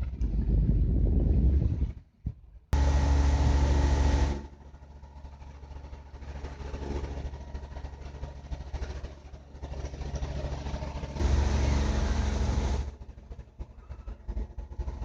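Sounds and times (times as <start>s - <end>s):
rumbling wind noise: 0.0s - 4.4s
boat engine running: 0.0s - 15.0s.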